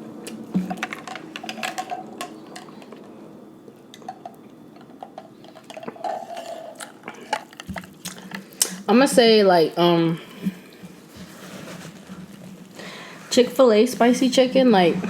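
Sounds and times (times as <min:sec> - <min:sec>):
wet chewing: 0:05.5 - 0:08.8.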